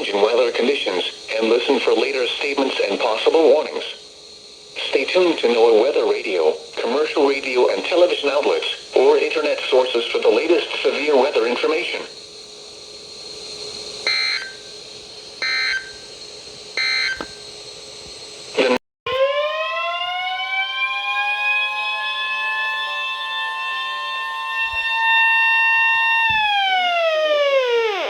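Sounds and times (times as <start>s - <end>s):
siren-like alert tone: 19.1s - 28.0s
steady single-pitch alert tone: 19.8s - 28.0s.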